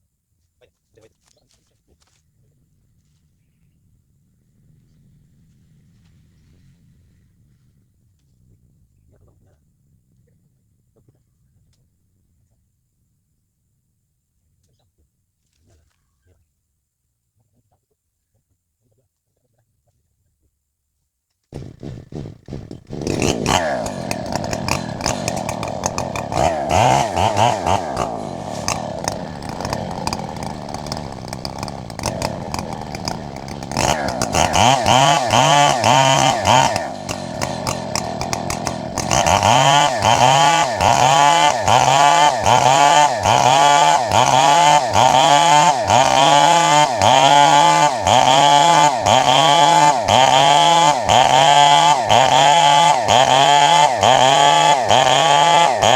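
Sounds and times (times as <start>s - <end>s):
chainsaw cutting wood: 21.6s - 55.9s.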